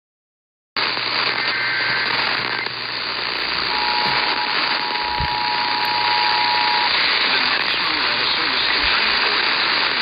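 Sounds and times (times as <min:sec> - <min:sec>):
radio static: 0:00.8 - 0:10.0
faint higher data tones: 0:01.2 - 0:08.8
two-tone alert signal: 0:03.7 - 0:06.9.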